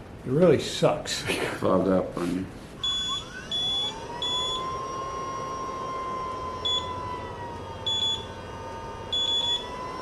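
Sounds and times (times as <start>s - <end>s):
respirator blower whine: 0.0s - 10.0s
short high alarm beeps: 2.8s - 4.6s, 7.9s - 8.2s, 9.1s - 9.6s.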